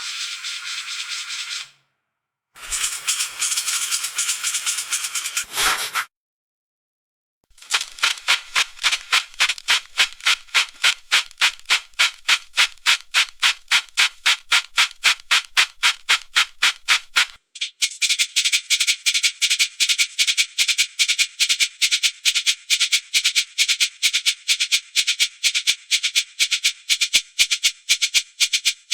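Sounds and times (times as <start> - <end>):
dishwasher water spray swishing: 2.6 - 4.1, 5.3 - 6.1, 7.6 - 17.4.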